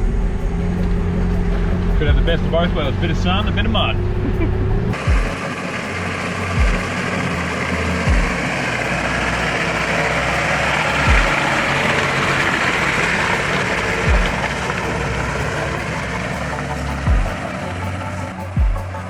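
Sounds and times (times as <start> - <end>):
background music with bass thumps: 0.0 - 19.0
vehicle rushing on wet track: 4.9 - 18.3.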